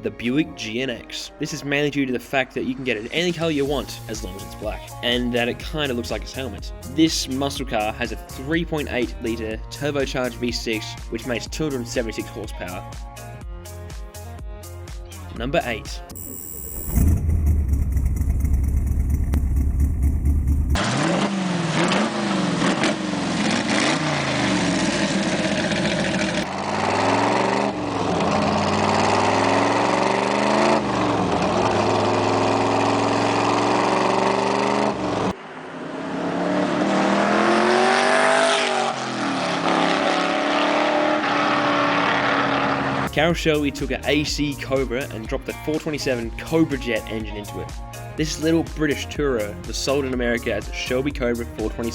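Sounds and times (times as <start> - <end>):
car engine revving: 16.2 - 43.1.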